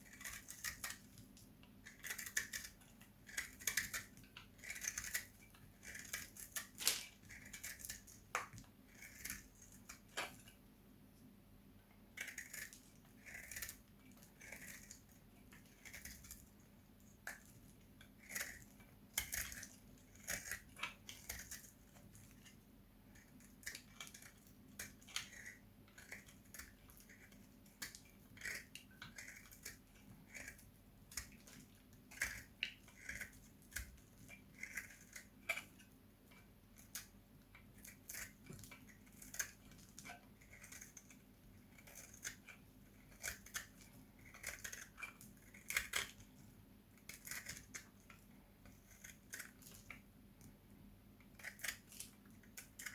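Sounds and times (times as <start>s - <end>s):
blade crunching through soap: 0.0s - 10.6s, 12.1s - 50.6s, 51.2s - 52.9s.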